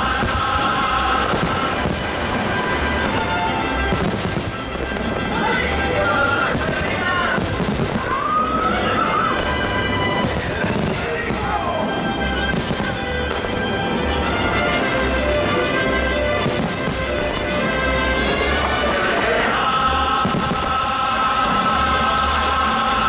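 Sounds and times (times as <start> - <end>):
loud music with beat and singing: 0.0 - 4.6, 18.6 - 23.0
fireworks bursting: 0.0 - 23.0.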